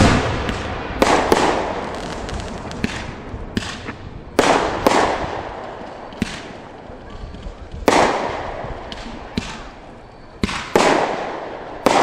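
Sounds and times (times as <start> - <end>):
fireworks booming: 0.0 - 12.0.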